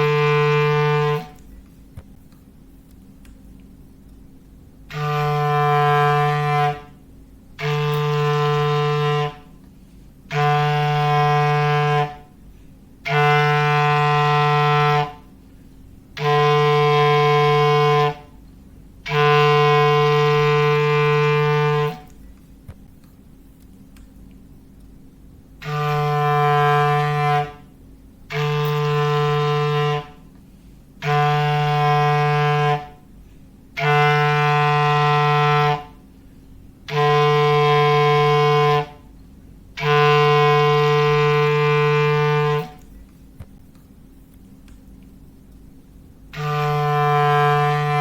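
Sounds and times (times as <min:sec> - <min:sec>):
clarinet low held notes: 0:00.0 - 0:01.5, 0:04.9 - 0:07.0, 0:07.6 - 0:09.6, 0:10.3 - 0:12.4, 0:13.0 - 0:15.4, 0:16.1 - 0:18.4, 0:19.0 - 0:22.2, 0:25.6 - 0:30.3, 0:31.0 - 0:33.2, 0:33.8 - 0:36.1, 0:36.8 - 0:39.1, 0:39.8 - 0:42.9, 0:46.3 - 0:48.0.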